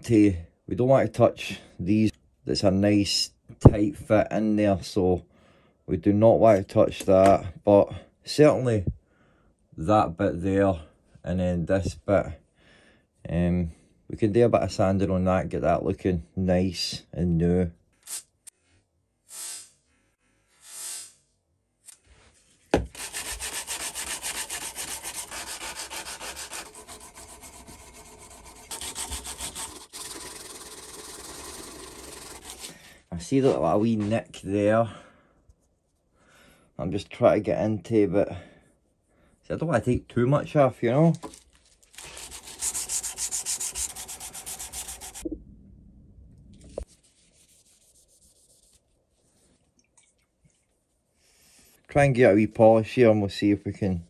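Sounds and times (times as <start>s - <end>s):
sandpaper rubbing on metal: 22.9s - 32.8s, 42.0s - 45.2s, 46.9s - 48.8s.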